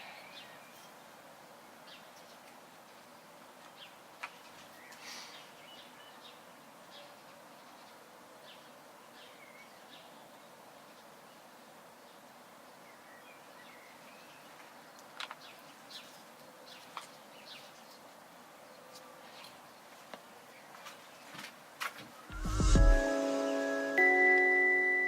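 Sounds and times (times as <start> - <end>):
loud low rumble: 22.3 - 23.1.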